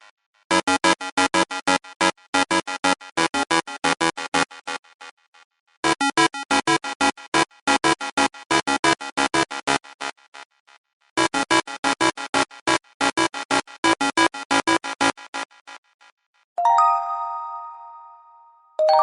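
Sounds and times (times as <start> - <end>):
phone ringtone synth melody: 16.6 - 19.0.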